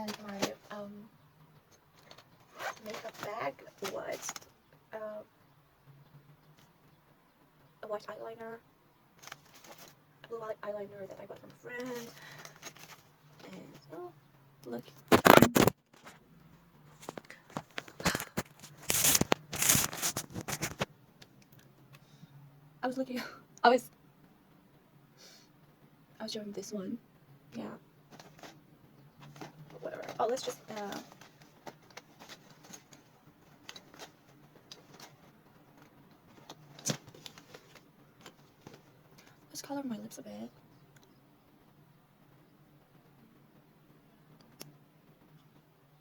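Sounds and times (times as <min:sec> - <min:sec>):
bag rustling: 0:00.0 - 0:00.8, 0:02.0 - 0:04.5, 0:09.2 - 0:10.0, 0:11.7 - 0:13.9, 0:15.0 - 0:16.2, 0:16.9 - 0:20.9, 0:29.2 - 0:39.2
rough scrape: 0:15.1 - 0:16.2, 0:17.0 - 0:20.9.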